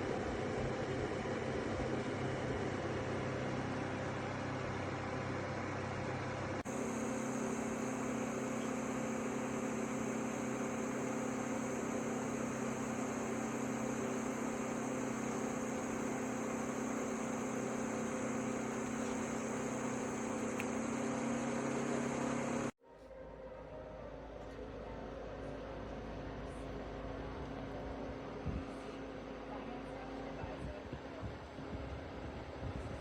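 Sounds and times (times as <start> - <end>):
fan motor humming: 6.6 - 22.8
faint high whine: 6.7 - 24.4.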